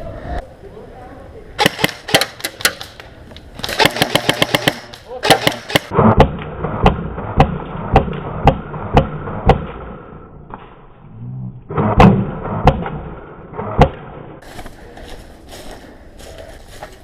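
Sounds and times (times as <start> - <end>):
airsoft rifle shots: 1.6 - 3.0, 3.6 - 10.0.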